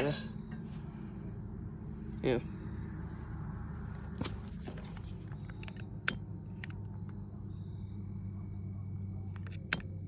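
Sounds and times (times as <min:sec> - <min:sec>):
sharp clicks: 0:05.3 - 0:07.2, 0:09.3 - 0:10.0.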